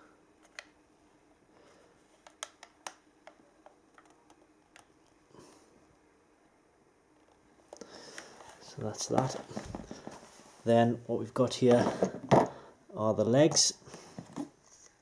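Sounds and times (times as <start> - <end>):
small clicks and taps of handling: 2.2 - 5.2
soft rustle: 8.2 - 10.8.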